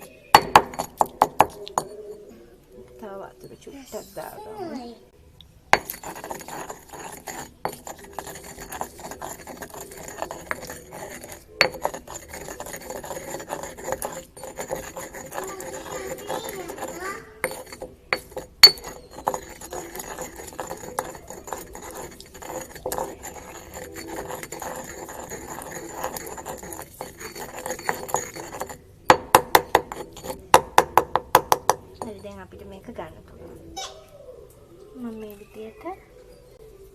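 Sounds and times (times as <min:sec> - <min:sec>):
kitchen utensils clinking and scraping: 0:05.8 - 0:28.9.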